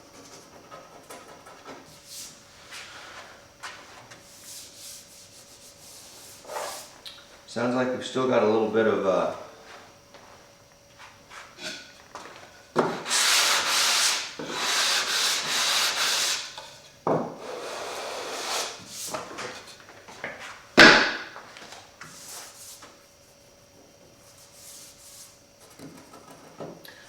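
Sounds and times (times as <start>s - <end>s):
hand sanding wood: 1.9s - 6.9s, 12.8s - 16.6s, 17.4s - 19.3s, 22.0s - 23.0s, 24.2s - 26.5s.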